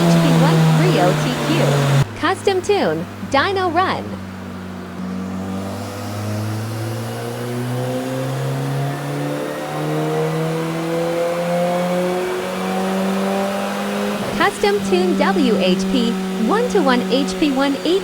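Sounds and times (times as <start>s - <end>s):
engine revving at full throttle: 0.0s - 18.0s.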